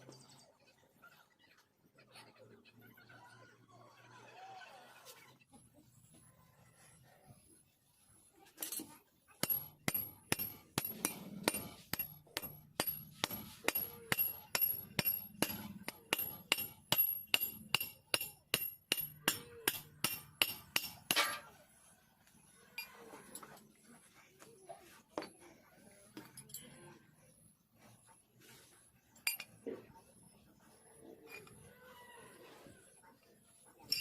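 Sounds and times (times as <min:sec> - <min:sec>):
hammer striking metal: 0:09.4 - 0:21.5.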